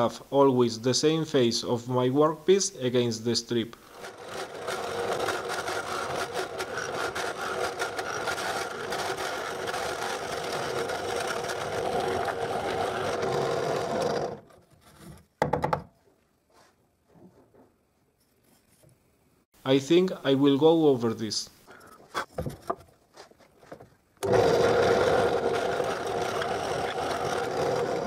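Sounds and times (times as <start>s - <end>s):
drill press motor hum: 3.9s - 14.5s, 24.2s - 28.0s
knock: 15.4s - 15.9s.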